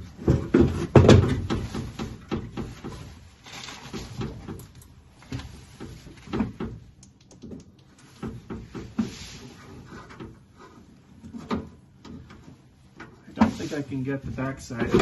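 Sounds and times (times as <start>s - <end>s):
clunks and knocks in car door: 0.2s - 2.8s.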